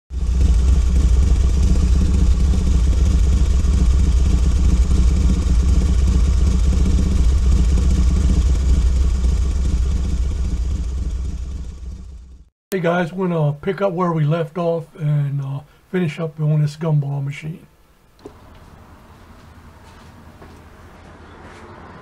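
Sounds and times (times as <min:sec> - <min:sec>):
low mechanical rumble: 0:00.1 - 0:13.0.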